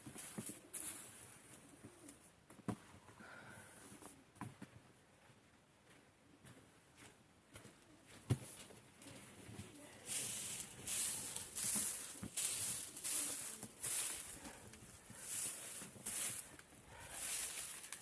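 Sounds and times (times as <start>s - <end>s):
footsteps crunching in snow: 10.0s - 18.0s.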